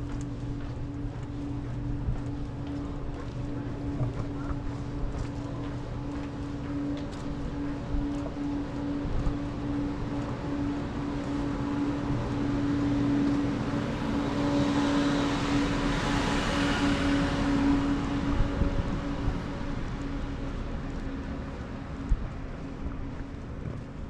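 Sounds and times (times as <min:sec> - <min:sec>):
steady low hum: 0:00.0 - 0:24.0
road vehicle passing: 0:05.6 - 0:24.0.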